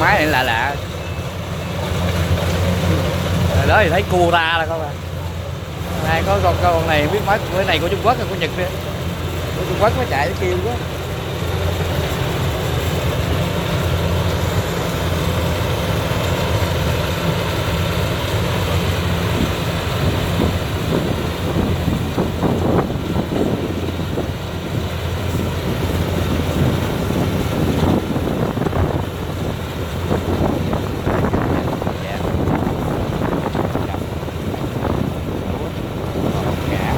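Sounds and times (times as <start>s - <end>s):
crackling rustle: 0.0s - 4.1s
combine harvester engine droning: 0.0s - 36.9s.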